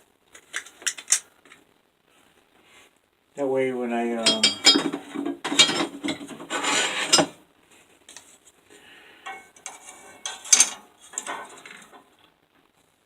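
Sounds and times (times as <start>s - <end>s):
metal clatter: 4.2s - 7.4s, 9.3s - 12.1s.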